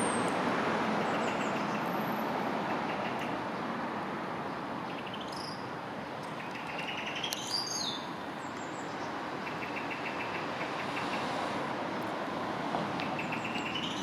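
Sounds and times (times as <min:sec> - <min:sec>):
bird chirps: 0:04.8 - 0:05.6, 0:06.4 - 0:11.2, 0:13.0 - 0:14.0.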